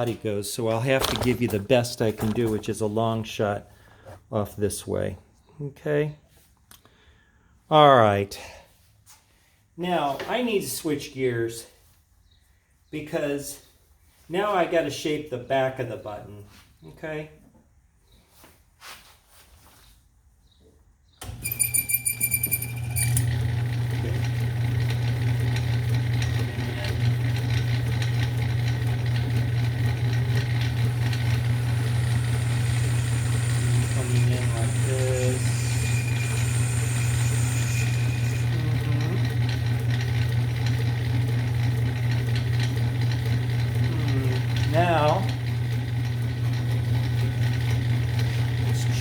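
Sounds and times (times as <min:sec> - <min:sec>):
lathe motor humming: 0:21.2 - 0:49.0
high motor whine: 0:29.0 - 0:39.8.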